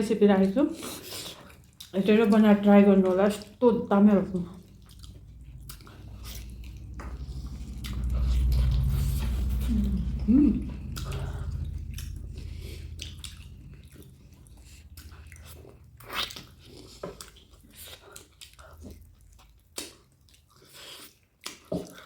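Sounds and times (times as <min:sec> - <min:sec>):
person chewing food: 0:00.7 - 0:22.0
low rumble: 0:03.8 - 0:19.6.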